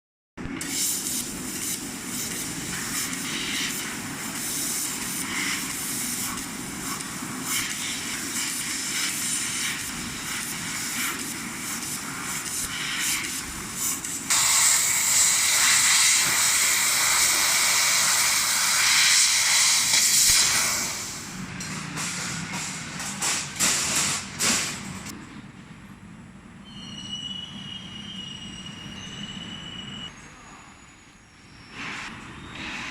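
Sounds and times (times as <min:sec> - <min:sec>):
hiss of assist gas jetting: 0:00.6 - 0:21.4.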